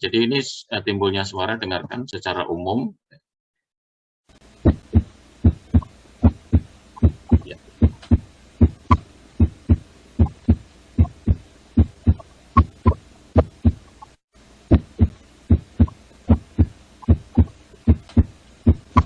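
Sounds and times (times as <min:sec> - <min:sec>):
heartbeat lub-dub: 0:04.6 - 0:13.9, 0:14.7 - 0:19.0.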